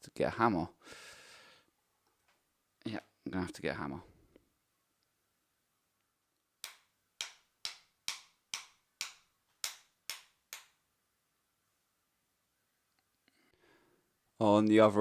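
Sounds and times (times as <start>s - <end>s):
hammer tapping metal bolt: 6.6s - 10.7s.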